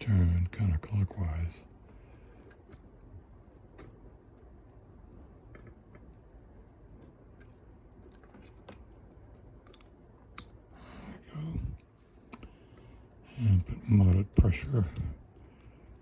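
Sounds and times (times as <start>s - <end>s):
lock pick clicking and scraping: 2.0s - 4.6s, 5.5s - 10.8s, 13.9s - 16.0s.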